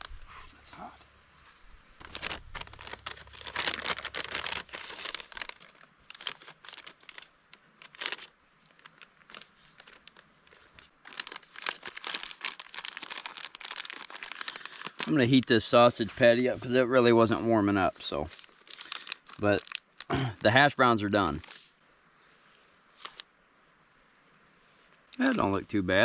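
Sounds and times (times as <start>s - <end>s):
plastic packaging crinkling: 2.0s - 16.3s, 17.9s - 20.2s, 21.2s - 21.7s, 23.0s - 23.2s, 25.2s - 25.6s.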